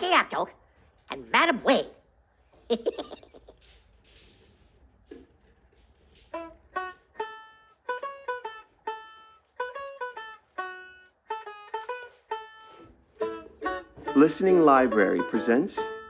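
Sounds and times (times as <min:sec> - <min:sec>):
plucked string melody: 0:06.3 - 0:16.0.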